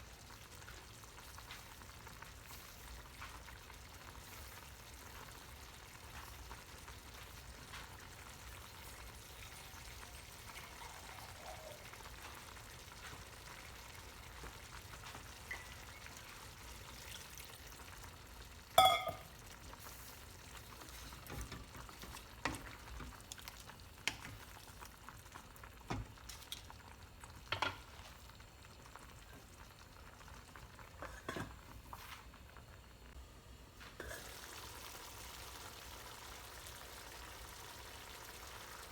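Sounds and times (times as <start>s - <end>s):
food sizzling in a pan: 0.0s - 33.2s, 33.8s - 38.9s
metal clink: 18.8s - 19.3s
spoon knocking against pan: 18.8s - 19.3s.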